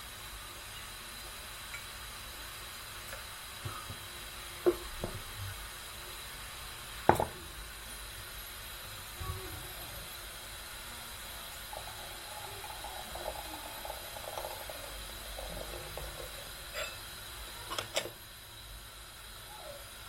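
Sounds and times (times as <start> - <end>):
steady background hiss: 0.0 - 20.0
water running: 9.2 - 18.4.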